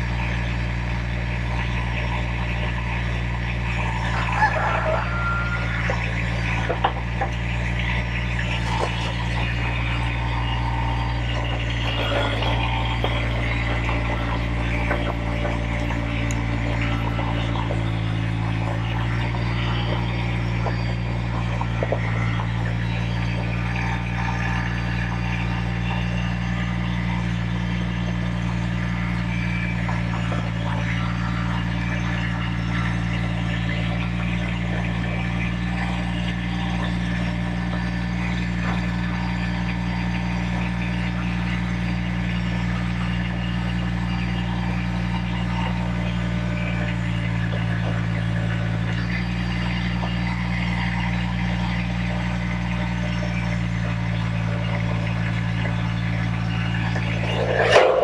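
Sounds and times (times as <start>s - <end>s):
engine running steadily: 0.0s - 58.0s.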